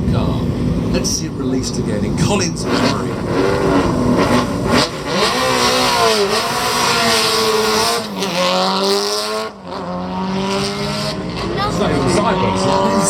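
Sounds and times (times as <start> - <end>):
rally car accelerating: 0.0 - 13.0.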